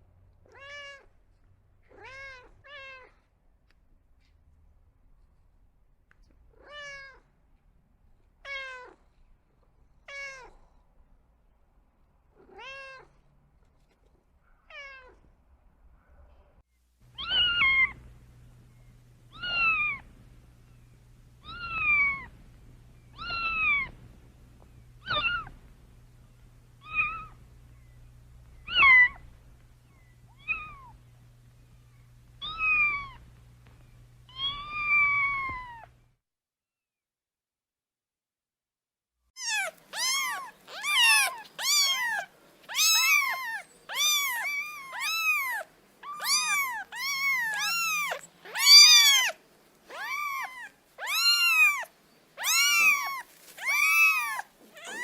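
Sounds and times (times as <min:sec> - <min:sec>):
low steady hum: 0:15.2 - 0:36.2
kitten meowing: 0:17.1 - 0:18.0, 0:19.3 - 0:20.1, 0:21.4 - 0:22.3, 0:23.1 - 0:24.0, 0:25.0 - 0:25.6, 0:26.8 - 0:27.4, 0:28.6 - 0:29.4, 0:30.3 - 0:31.0, 0:32.4 - 0:33.2, 0:34.3 - 0:36.0, 0:39.4 - 0:55.0.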